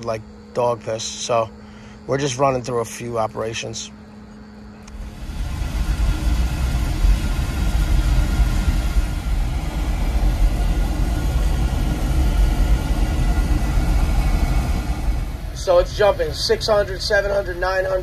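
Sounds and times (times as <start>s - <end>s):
oil burner rumbling: 3.7s - 18.0s.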